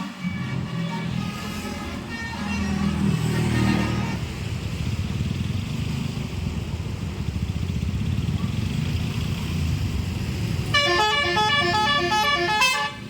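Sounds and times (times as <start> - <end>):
bus musical horn: 0.0 - 4.2, 10.7 - 13.0
bus engine throbbing: 0.0 - 13.0.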